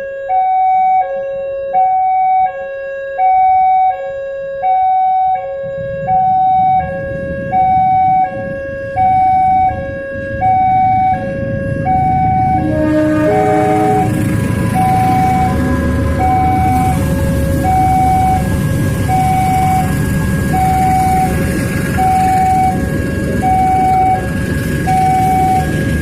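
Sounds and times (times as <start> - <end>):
level crossing warning siren: 0.0 - 26.0
low rumble: 5.8 - 26.0.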